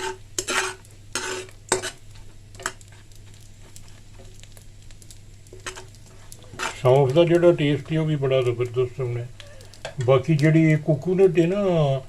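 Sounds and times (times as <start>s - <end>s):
spoon scraping in a pan: 0.0s - 4.4s, 5.5s - 7.5s
nuts sizzling in fat: 0.0s - 12.0s.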